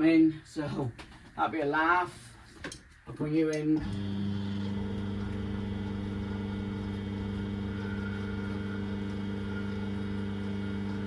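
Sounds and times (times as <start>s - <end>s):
hydraulic pump motor humming: 3.8s - 11.0s.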